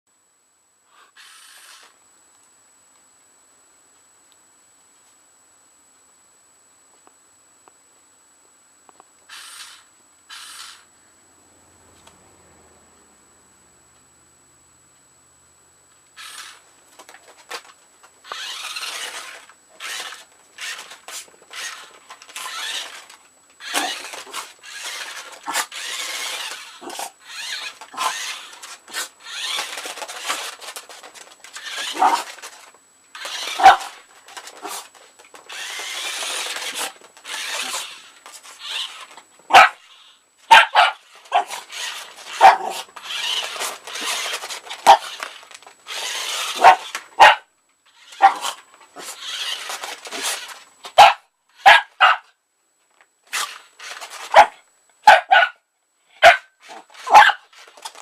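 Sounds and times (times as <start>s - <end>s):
toy truck whirring: 1.1s - 2.0s, 9.3s - 10.9s, 16.2s - 51.8s, 53.3s - 54.5s, 56.6s - 58.0s
small dog barking in sharp yaps: 39.5s - 39.8s, 40.5s - 41.6s, 46.5s - 47.4s, 51.0s - 52.3s, 54.3s - 55.6s, 56.2s - 56.5s, 57.1s - 57.4s.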